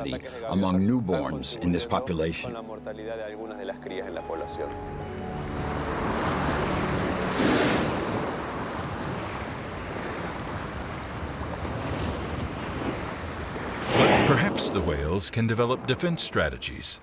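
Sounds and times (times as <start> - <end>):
sea surf washing: 5.2 - 17.0
wind buffeting microphone: 6.0 - 16.0.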